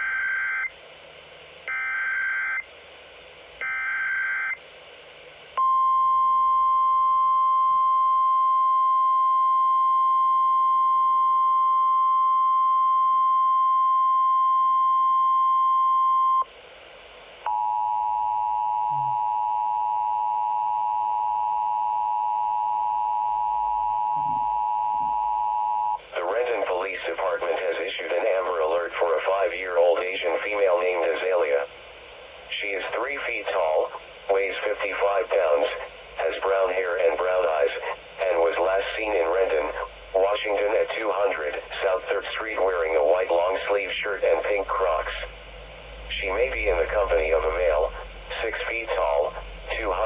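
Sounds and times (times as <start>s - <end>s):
steady warning alarm tone: 1.7s - 2.7s, 3.6s - 4.6s, 17.5s - 26.0s
radio hiss: 26.0s - 50.0s.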